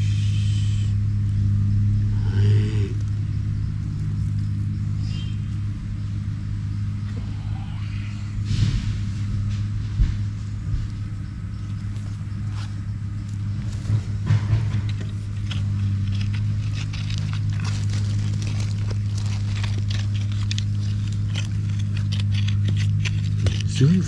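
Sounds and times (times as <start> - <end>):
low motor hum: 0.0 - 24.0
scrapes and knocks: 13.4 - 24.0.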